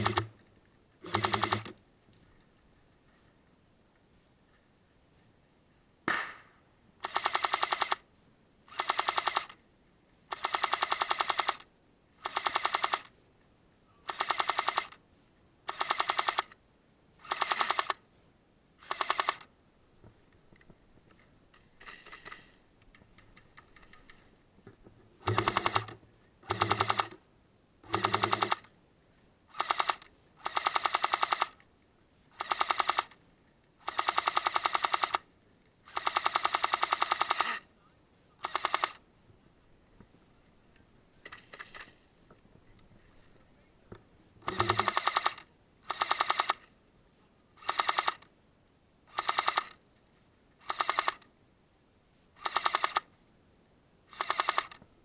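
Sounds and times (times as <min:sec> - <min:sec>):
airsoft gun automatic bursts: 0:00.0 - 0:01.8, 0:06.1 - 0:08.0, 0:08.7 - 0:09.6, 0:10.3 - 0:13.2, 0:14.0 - 0:15.0, 0:15.7 - 0:16.6, 0:17.2 - 0:18.0, 0:18.8 - 0:19.5, 0:21.1 - 0:22.6, 0:25.2 - 0:28.7, 0:29.5 - 0:31.6, 0:32.3 - 0:37.7, 0:38.4 - 0:39.0, 0:41.2 - 0:42.1, 0:44.4 - 0:46.7, 0:47.6 - 0:48.3, 0:49.1 - 0:49.8, 0:50.6 - 0:51.3, 0:52.4 - 0:53.1, 0:54.1 - 0:54.8.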